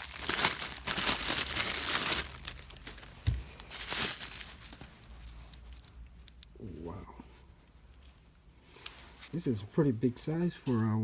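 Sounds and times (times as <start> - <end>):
packaging crinkling and tearing: 0.0 - 6.5
dull thump: 3.2 - 3.5.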